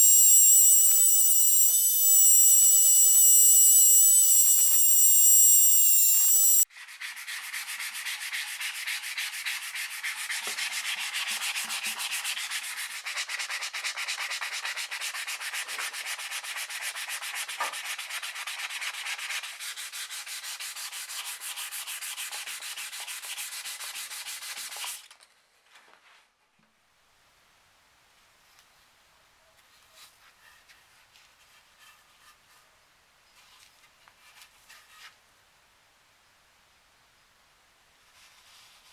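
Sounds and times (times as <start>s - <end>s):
high-pitched power tool whine: 0.0s - 6.6s.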